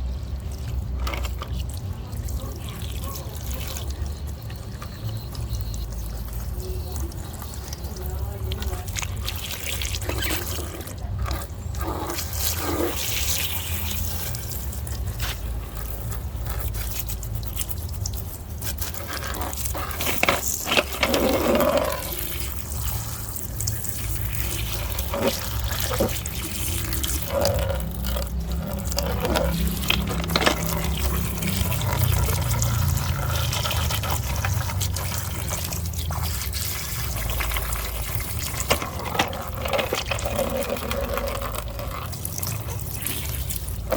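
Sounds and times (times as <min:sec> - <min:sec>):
water running and splashing: 0:00.0 - 0:43.9.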